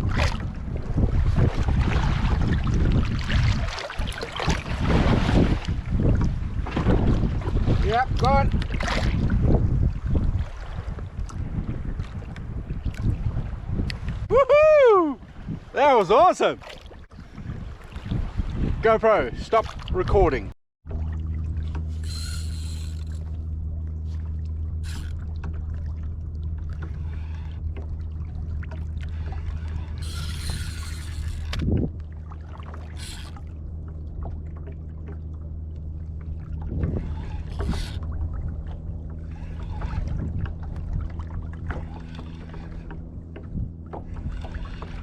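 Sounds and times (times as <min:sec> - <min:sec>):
boat motor humming: 0:00.0 - 0:45.0
water splashing: 0:01.4 - 0:09.4, 0:15.8 - 0:17.1, 0:20.9 - 0:45.0.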